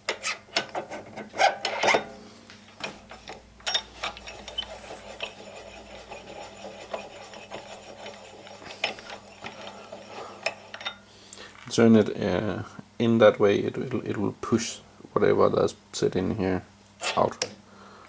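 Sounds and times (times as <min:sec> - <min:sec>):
dry rasping rub: 0:03.9 - 0:10.8.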